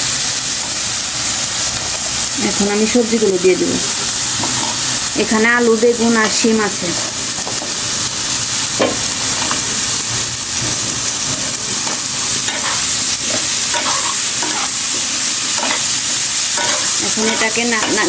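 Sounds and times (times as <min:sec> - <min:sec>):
vegetables sizzling in hot oil: 0:00.0 - 0:18.0
stirring scrapes in pan: 0:11.0 - 0:18.0.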